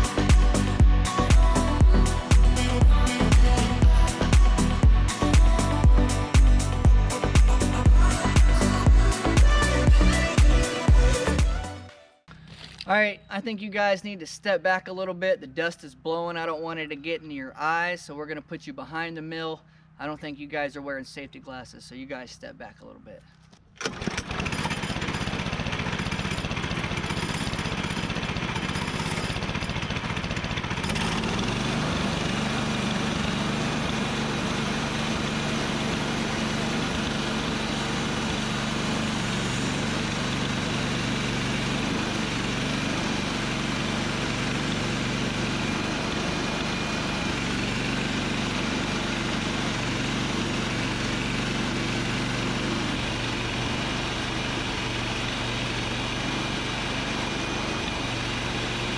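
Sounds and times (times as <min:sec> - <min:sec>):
sawmill engine running: 0:00.0 - 0:11.8, 0:23.8 - 0:58.9.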